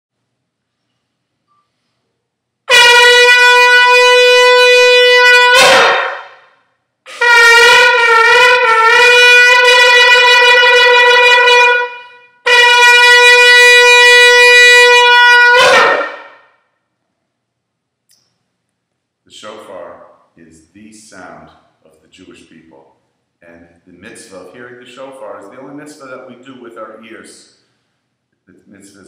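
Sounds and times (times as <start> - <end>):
shofar blasts: 2.7 - 16.7.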